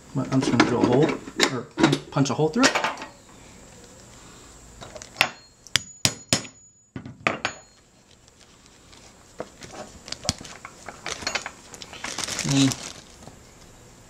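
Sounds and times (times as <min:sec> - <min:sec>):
hammer striking hole punch: 0:05.2 - 0:06.6.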